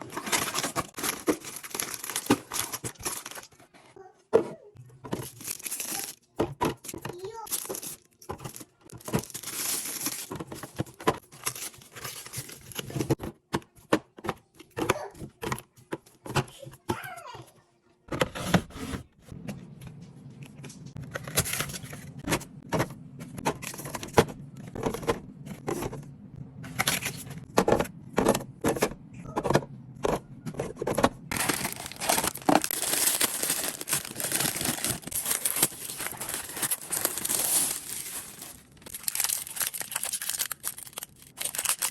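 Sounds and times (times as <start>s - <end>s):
plastic bags crinkling and tearing: 0.0s - 3.6s, 5.2s - 6.2s, 7.4s - 10.7s, 11.3s - 13.1s, 31.3s - 41.9s
groceries knocking and clattering: 0.0s - 17.2s, 18.1s - 41.9s.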